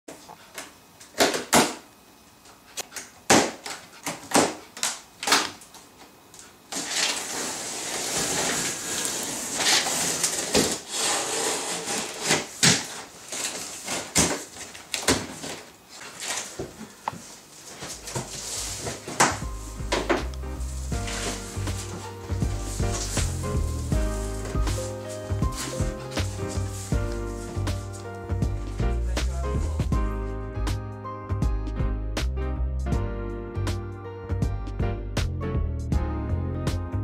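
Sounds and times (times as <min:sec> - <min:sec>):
packaging rustling: 0:06.7 - 0:29.8.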